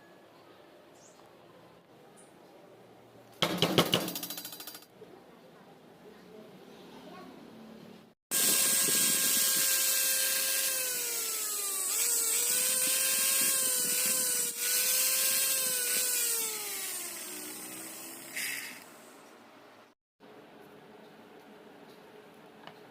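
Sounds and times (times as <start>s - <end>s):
blender motor humming: 8.3s - 19.0s
scrape or rattle: 18.3s - 18.9s.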